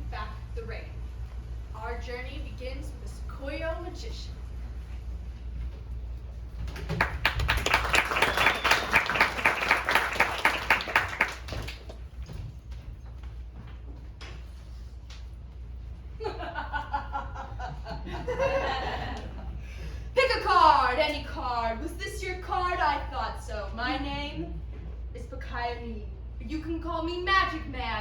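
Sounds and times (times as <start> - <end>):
audience clapping: 6.6 - 12.2.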